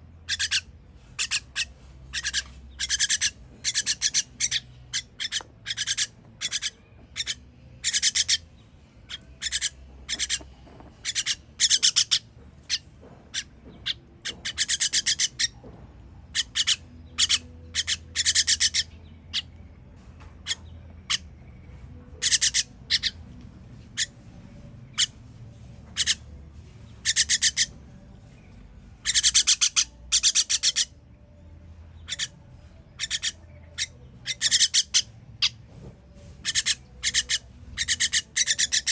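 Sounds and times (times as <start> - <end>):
baby bird begging calls: 0.2 - 8.4, 9.1 - 15.6, 16.3 - 19.5, 22.2 - 23.2, 26.0 - 26.2, 27.0 - 27.7, 29.0 - 30.9, 32.0 - 32.4, 33.0 - 35.6, 36.4 - 38.9.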